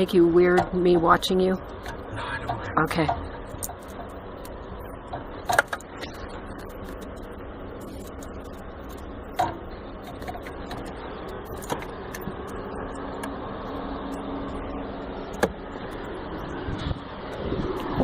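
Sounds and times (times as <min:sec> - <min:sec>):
workshop background hum: 0:00.0 - 0:18.0.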